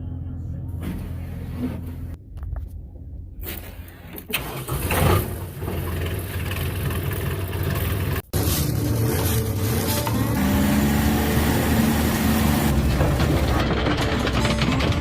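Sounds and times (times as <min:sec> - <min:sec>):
tractor diesel engine starting: 0:04.1 - 0:15.0.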